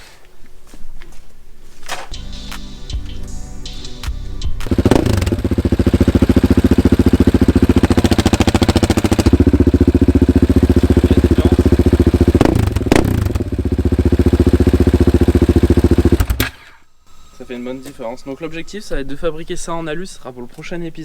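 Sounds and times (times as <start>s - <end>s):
motorcycle engine idling: 4.6s - 16.6s.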